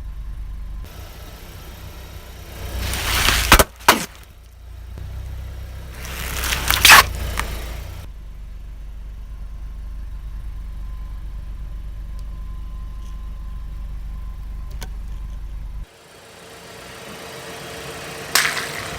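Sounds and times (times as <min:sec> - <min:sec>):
car engine running low: 0:00.0 - 0:18.9
tyre crunching objects: 0:02.6 - 0:04.5, 0:05.9 - 0:08.0.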